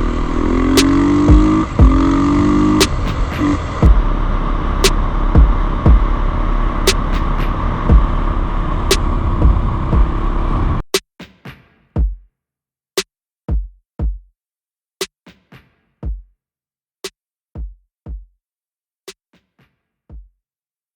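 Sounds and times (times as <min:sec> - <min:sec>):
electronic drum machine beat: 0:00.0 - 0:10.3
vehicle noise: 0:00.0 - 0:10.9
deep kick drums: 0:00.8 - 0:02.2, 0:03.8 - 0:04.2, 0:04.8 - 0:06.2, 0:07.9 - 0:08.2, 0:09.4 - 0:10.2, 0:12.0 - 0:12.2, 0:13.5 - 0:14.3, 0:16.0 - 0:16.3, 0:17.6 - 0:18.4
sharp snare hits: 0:02.8 - 0:03.5, 0:04.8 - 0:06.0.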